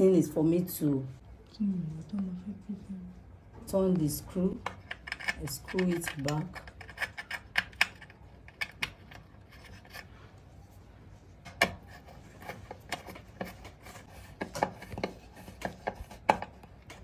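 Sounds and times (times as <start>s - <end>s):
metal screw clicks and scrapes: 4.6s - 10.1s.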